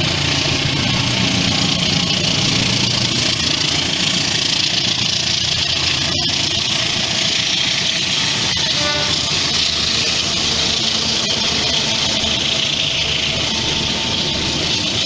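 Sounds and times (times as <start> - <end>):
locomotive engine running: 0.0 - 15.0.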